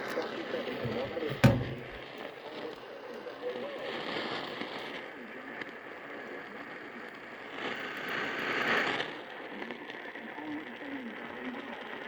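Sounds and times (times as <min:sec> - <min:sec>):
radio static hiss: 0:00.0 - 0:12.0.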